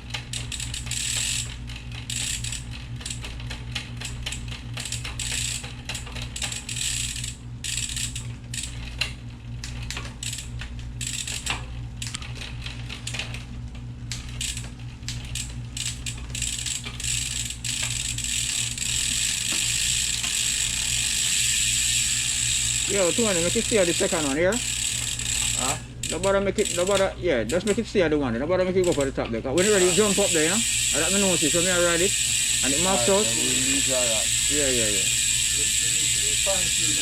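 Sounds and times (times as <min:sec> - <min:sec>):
metallic bicycle clicks and rattles: 0:00.0 - 0:28.0, 0:28.7 - 0:37.0
steady low hum: 0:00.0 - 0:37.0.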